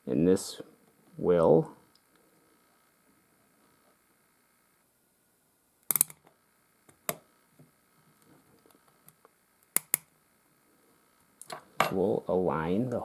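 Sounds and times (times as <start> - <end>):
spring hinge tool clicks: 5.9 - 6.2.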